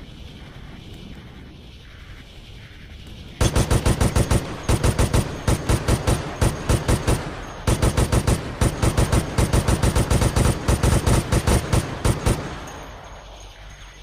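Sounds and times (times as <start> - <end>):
machine gun firing bursts: 3.4 - 13.2
gunfire echo: 3.4 - 13.4.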